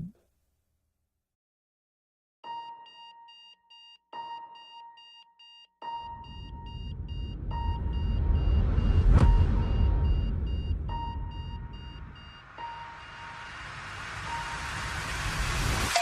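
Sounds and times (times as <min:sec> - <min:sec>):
low held electronic tone: 0:06.2 - 0:13.6
rush of noise: 0:11.4 - 0:16.0.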